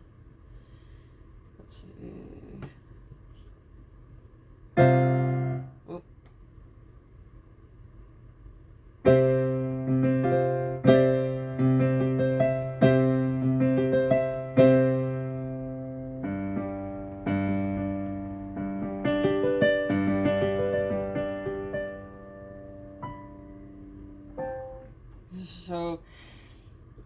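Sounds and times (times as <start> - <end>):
digital piano chords: 4.8 - 5.8, 9.0 - 25.0.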